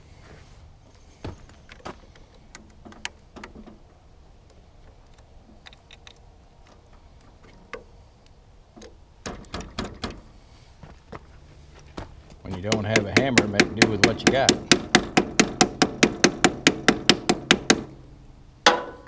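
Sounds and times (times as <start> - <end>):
steady low hum: 0.0 - 19.0
hand tools clicking and tapping: 12.0 - 17.9.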